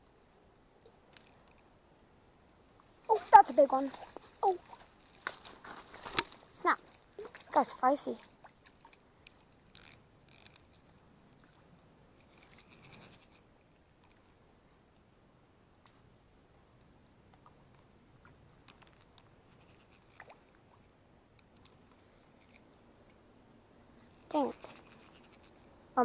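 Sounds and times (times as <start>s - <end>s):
faint clicks: 0.8s - 1.7s, 16.8s - 20.6s, 21.3s - 23.2s
ticks and rustling: 3.0s - 13.4s, 17.4s - 20.6s, 24.0s - 26.0s.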